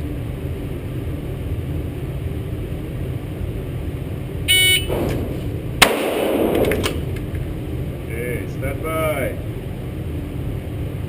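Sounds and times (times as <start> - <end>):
short timer beep: 4.5 - 4.9
pistol shot with ring-out: 4.9 - 7.1.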